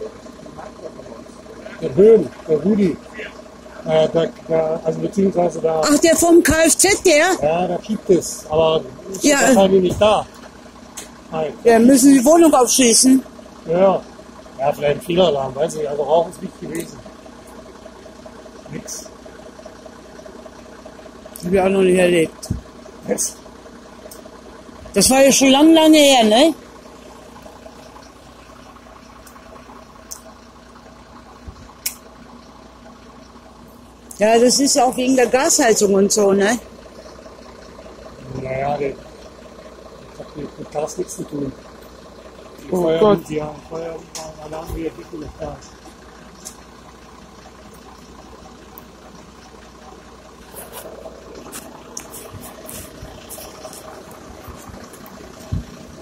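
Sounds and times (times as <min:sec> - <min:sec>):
low background rumble: 0:00.0 - 0:56.0
soft low thump: 0:55.5 - 0:55.8.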